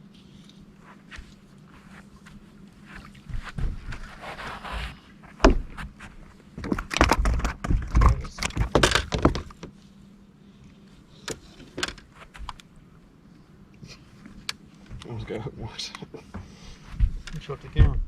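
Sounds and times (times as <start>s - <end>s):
knocks and thumps on boat deck: 3.3s - 4.1s, 5.3s - 6.0s, 6.6s - 9.7s, 16.3s - 18.0s.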